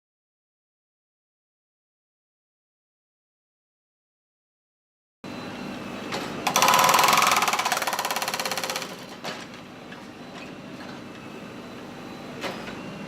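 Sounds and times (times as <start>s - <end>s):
machine engine running: 5.3s - 9.2s
hydraulic hammer hammering: 6.4s - 9.4s.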